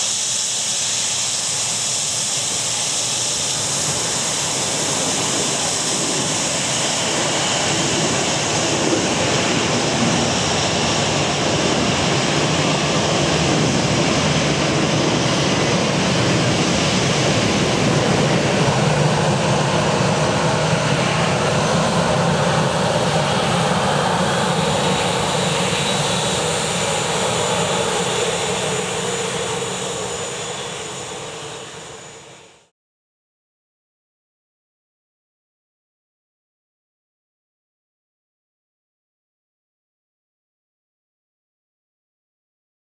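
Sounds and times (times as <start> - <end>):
jet engines roaring: 0.0 - 32.7.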